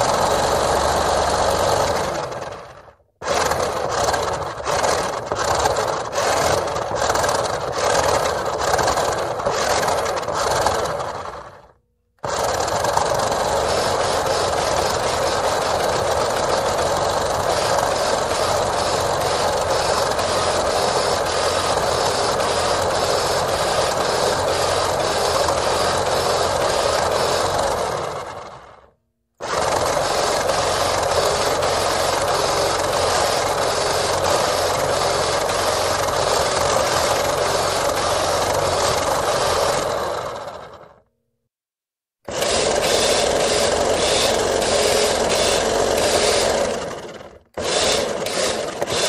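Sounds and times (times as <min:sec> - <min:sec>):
toy motor whining: 0:12.2 - 0:28.3, 0:29.4 - 0:40.8, 0:42.3 - 0:49.0.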